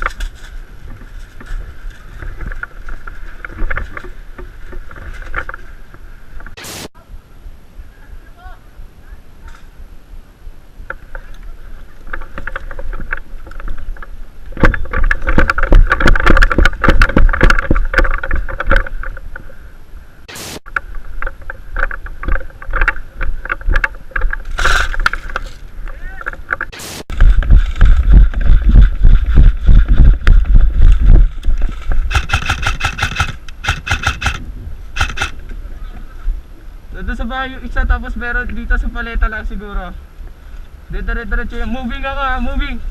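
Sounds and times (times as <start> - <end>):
handling thumps and rustling: 12.1 - 19.5
fast run of sharp clicks: 26.3 - 34.4, 35.0 - 35.4.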